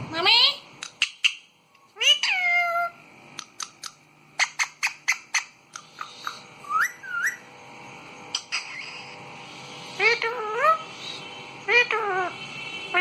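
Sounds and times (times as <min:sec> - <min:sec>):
parakeet chirping: 0:00.8 - 0:07.5, 0:08.3 - 0:13.0
parakeet rising whistles: 0:04.4 - 0:07.5.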